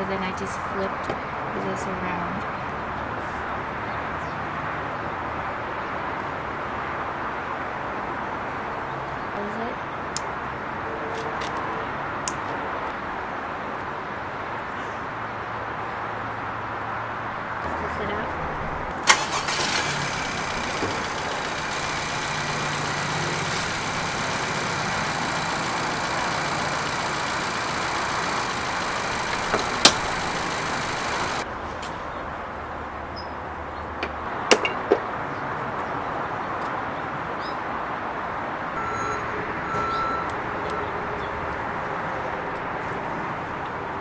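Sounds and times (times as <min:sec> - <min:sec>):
car engine idling: 0:19.0 - 0:31.4
sharp clicks: 0:19.0 - 0:31.4.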